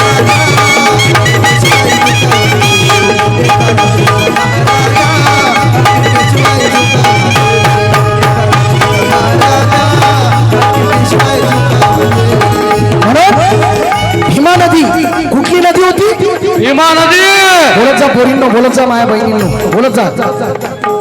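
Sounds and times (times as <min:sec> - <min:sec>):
hand drums fast rhythm: 0:00.0 - 0:21.0
held melody notes: 0:00.0 - 0:21.0.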